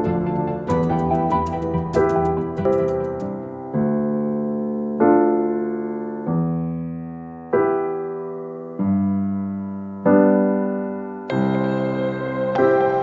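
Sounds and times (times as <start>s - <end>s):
slow piano chords: 0.0s - 13.0s.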